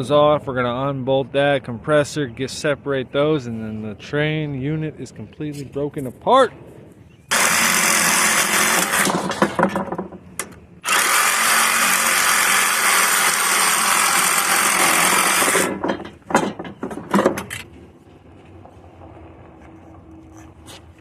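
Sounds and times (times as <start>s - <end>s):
power tool cutting metal pipe: 7.3s - 9.7s, 10.8s - 15.8s
metal rattling: 7.3s - 11.1s, 13.3s - 21.0s.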